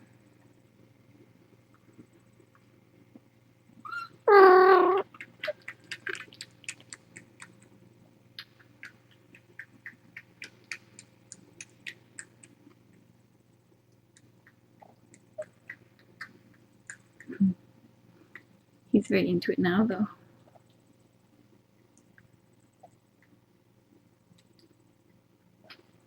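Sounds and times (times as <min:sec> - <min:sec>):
cat meowing loudly: 0:03.9 - 0:05.0.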